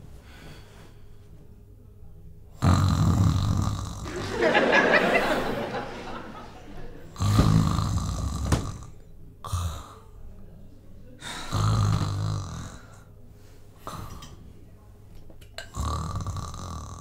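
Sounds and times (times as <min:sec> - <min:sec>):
man snoring: 0:02.6 - 0:04.3, 0:07.1 - 0:10.0, 0:11.3 - 0:13.0, 0:15.6 - 0:17.0.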